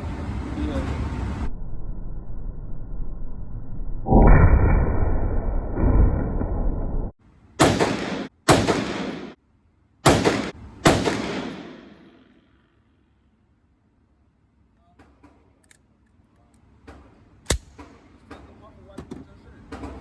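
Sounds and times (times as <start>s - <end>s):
rifle shots: 7.6s - 9.4s, 10.0s - 12.4s.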